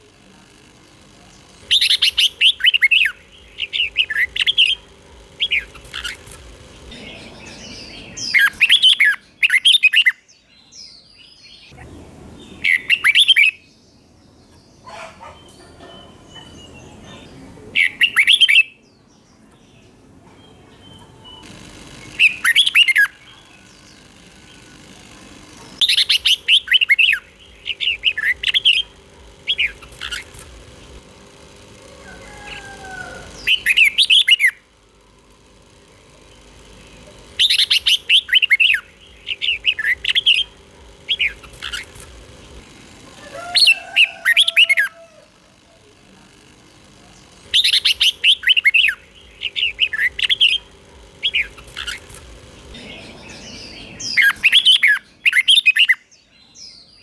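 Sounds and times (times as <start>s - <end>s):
bird singing chirpy phrases: 0.9s - 31.1s, 46.6s - 57.0s.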